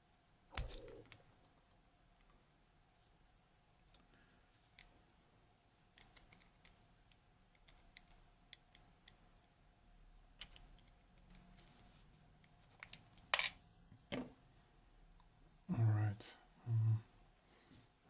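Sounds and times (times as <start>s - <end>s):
lock and tools clicking: 6.0s - 6.8s, 7.5s - 9.2s, 10.4s - 11.9s.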